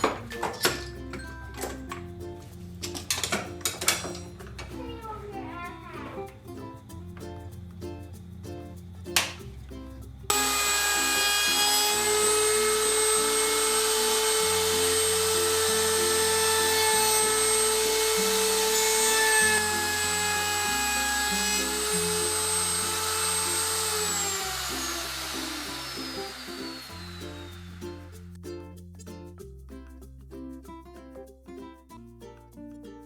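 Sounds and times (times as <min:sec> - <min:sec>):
electric router whining: 0:10.3 - 0:27.8.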